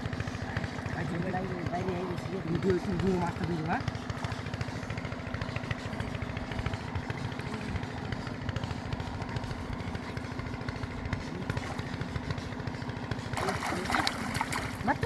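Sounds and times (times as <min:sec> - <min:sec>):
small engine running: 0:00.0 - 0:15.0.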